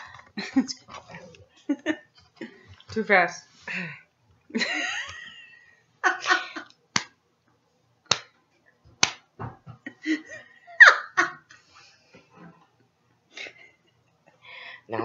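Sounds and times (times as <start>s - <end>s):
laughter: 1.6s - 2.1s, 4.5s - 6.7s, 9.8s - 11.6s
sharp smacks: 8.1s - 8.3s.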